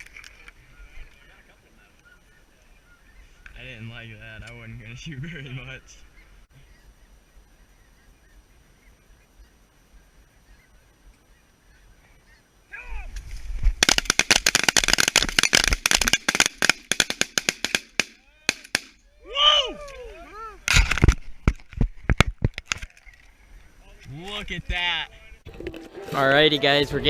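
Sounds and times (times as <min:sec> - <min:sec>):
geese calling: 0:00.6 - 0:03.9
shotgun fire: 0:13.8 - 0:19.0.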